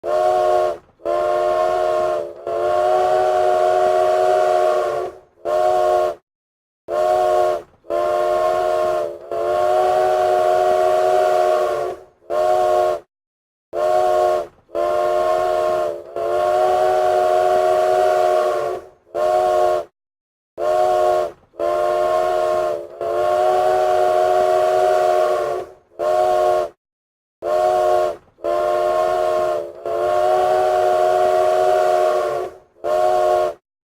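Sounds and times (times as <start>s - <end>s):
train whistle blasts: 0.0s - 6.2s, 6.9s - 13.1s, 13.8s - 19.9s, 20.6s - 26.8s, 27.4s - 33.6s.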